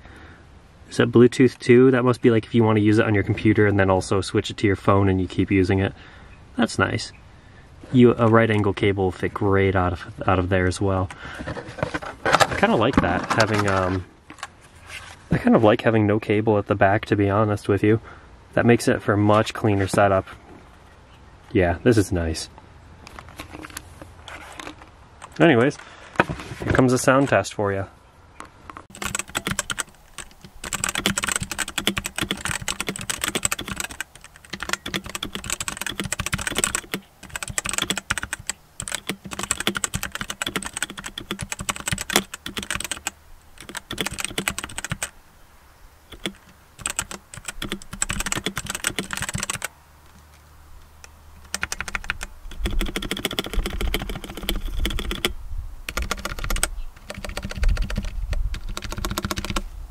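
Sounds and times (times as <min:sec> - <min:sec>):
mechanical keyboard key clacks: 0:28.9 - 0:45.1, 0:46.1 - 0:49.7, 0:51.5 - 0:55.3, 0:55.9 - 0:59.6.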